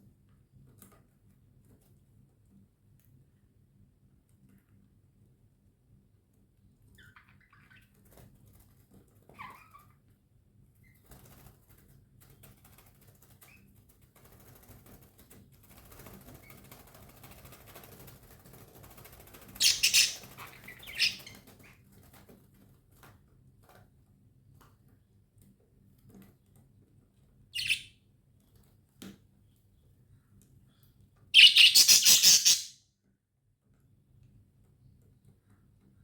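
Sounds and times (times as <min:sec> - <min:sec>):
wings fluttering and rustling: 0:06.9 - 0:29.0, 0:31.4 - 0:32.7
budgerigars chirping: 0:19.6 - 0:21.4, 0:27.6 - 0:27.9, 0:31.4 - 0:32.7.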